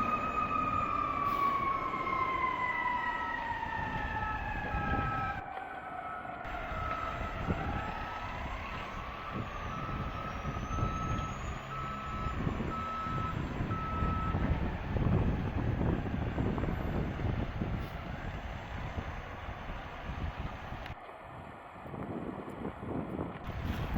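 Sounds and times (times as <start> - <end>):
fire truck siren: 0.0 - 21.0
truck engines rumbling: 0.0 - 23.9
reverse alarm beeping: 9.2 - 14.5.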